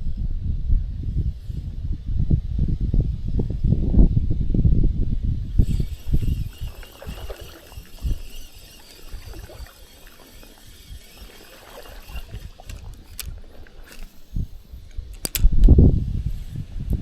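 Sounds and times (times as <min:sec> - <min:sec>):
wind buffeting microphone: 0:02.2 - 0:17.0
sharp clicks: 0:05.6 - 0:15.7.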